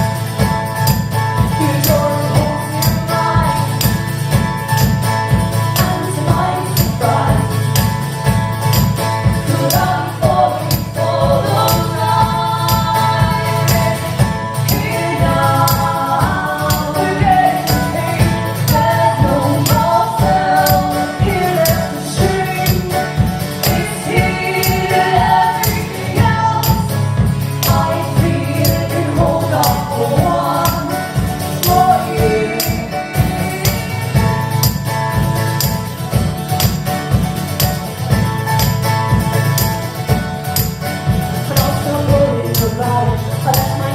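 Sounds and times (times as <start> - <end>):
percussive beat: 0.0 - 43.9
voices singing in harmony: 1.6 - 4.3, 5.8 - 8.0, 9.2 - 34.8.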